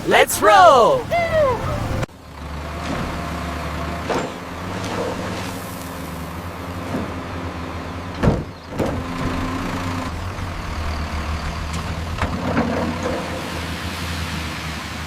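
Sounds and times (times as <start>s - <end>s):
truck engines rumbling: 0.0s - 2.1s.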